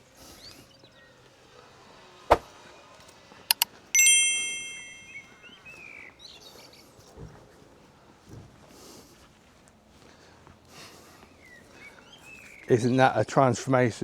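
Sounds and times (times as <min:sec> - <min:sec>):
bright metallic ding: 0:03.5 - 0:05.6.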